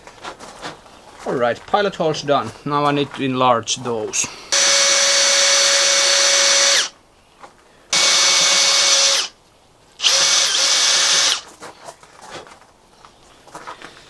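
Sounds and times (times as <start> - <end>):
electric drill motor whine: 4.5 - 7.0, 7.9 - 9.4, 10.0 - 11.5.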